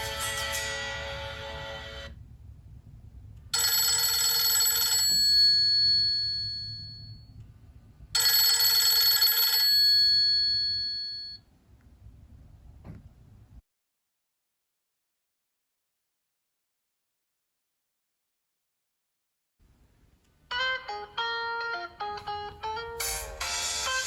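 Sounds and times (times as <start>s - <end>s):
musical ringtone: 0.0s - 2.1s
telephone bell ringtone: 3.6s - 7.3s, 8.2s - 11.4s.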